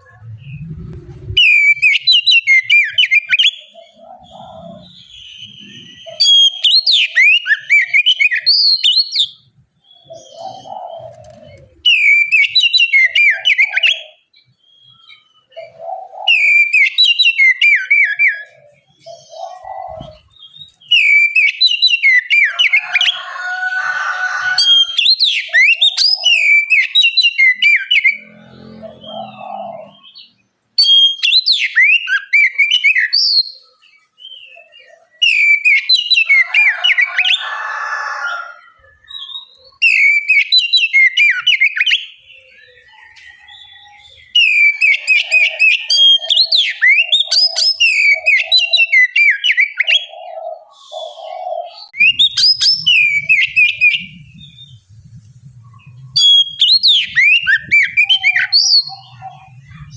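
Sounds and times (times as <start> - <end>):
bird singing whistles and chatter: 10.0 - 14.2, 14.9 - 22.9, 29.1 - 37.2, 39.0 - 50.6, 51.2 - 54.9, 55.7 - 59.9.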